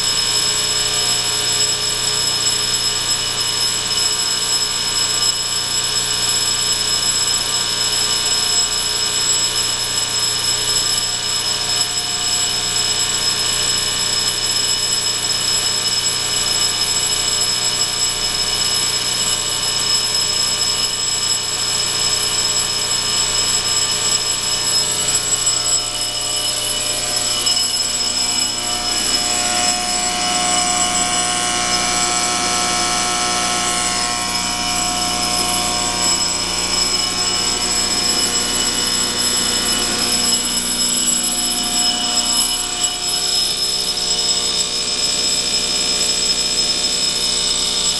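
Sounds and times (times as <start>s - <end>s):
fire alarm droning: 0.0s - 47.9s.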